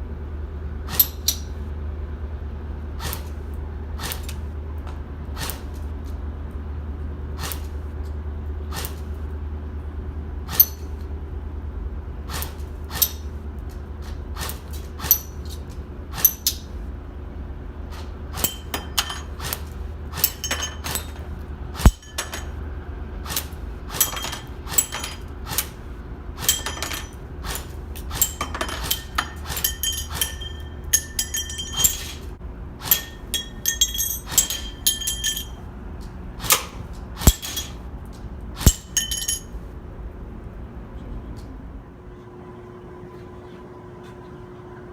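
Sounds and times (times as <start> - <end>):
pellets clinking on target: 21.8 - 22.6, 26.4 - 35.6, 36.5 - 37.8, 38.6 - 39.6
airsoft gun shots: 36.4 - 37.7.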